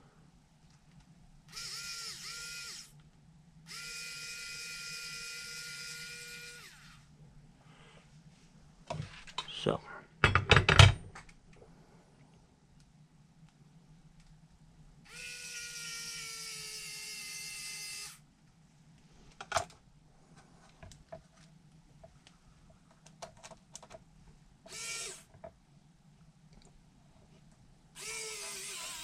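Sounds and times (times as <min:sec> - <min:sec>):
electric screwdriver whine: 0:01.5 - 0:02.9, 0:03.7 - 0:07.0, 0:15.1 - 0:18.2, 0:24.7 - 0:25.3, 0:28.0 - 0:29.0.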